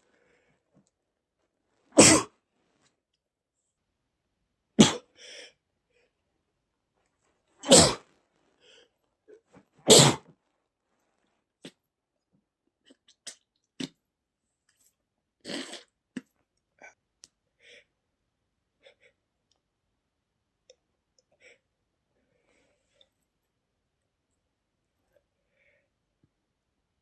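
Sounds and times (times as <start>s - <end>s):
man sneezing: 2.0s - 2.3s, 4.8s - 5.0s, 7.6s - 8.0s, 9.9s - 10.2s.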